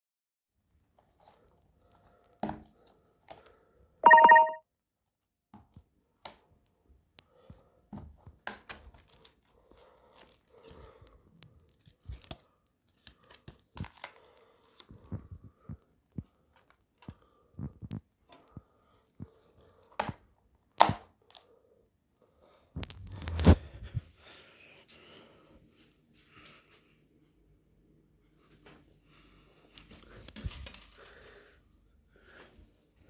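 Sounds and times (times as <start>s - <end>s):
short loud electronic beep: 4.1s - 4.6s.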